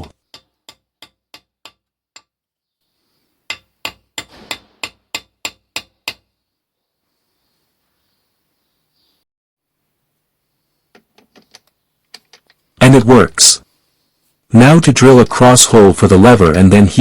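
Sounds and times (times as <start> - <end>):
hammer tapping steel pin: 0.0 - 2.4, 3.5 - 6.3.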